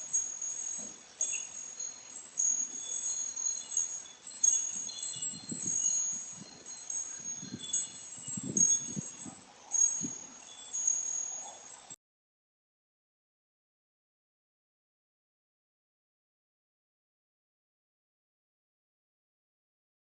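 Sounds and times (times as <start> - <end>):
wind chimes ringing: 0.0 - 12.0
wind buffeting microphone: 4.6 - 10.4.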